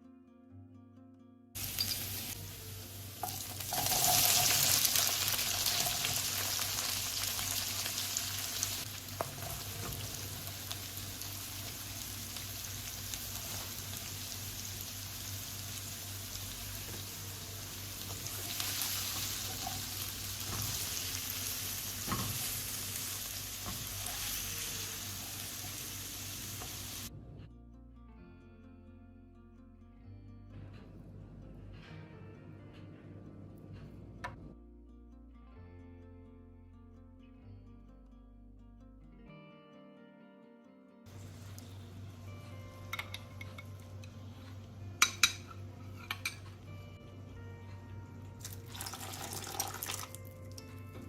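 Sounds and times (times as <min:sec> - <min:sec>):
food sizzling in hot pan: 0:01.6 - 0:27.1, 0:41.1 - 0:42.3, 0:48.4 - 0:50.6.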